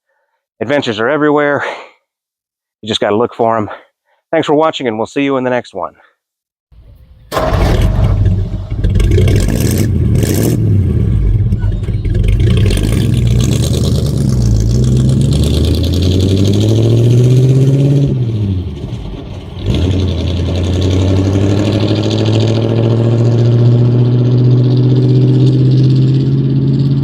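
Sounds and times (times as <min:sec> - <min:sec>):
truck engine revving: 0:06.9 - 0:27.0.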